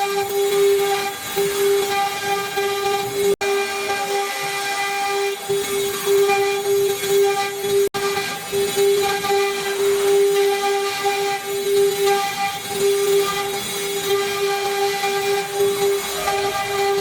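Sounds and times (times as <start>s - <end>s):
router spindle high whine: 0.0s - 17.0s.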